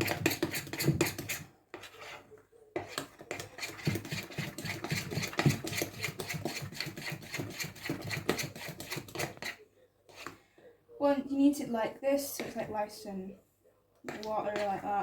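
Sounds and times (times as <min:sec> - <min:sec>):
spoon scraping mixing bowl: 0:00.0 - 0:10.4, 0:14.0 - 0:15.0.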